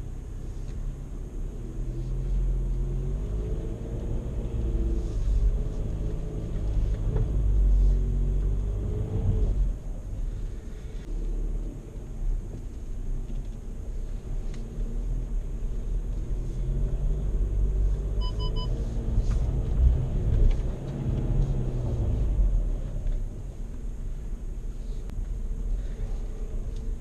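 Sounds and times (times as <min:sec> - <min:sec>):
diesel engine driving off-road: 0:00.0 - 0:27.0
short electronic beeps: 0:18.2 - 0:18.8.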